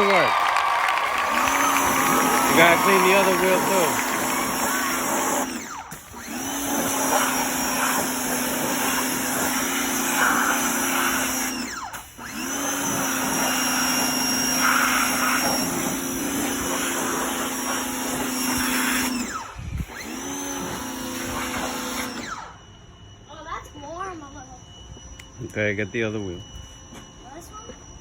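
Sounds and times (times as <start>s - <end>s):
pressure washer motor humming: 0.0s - 22.7s
water hissing from nozzle: 1.3s - 12.2s, 12.8s - 19.1s.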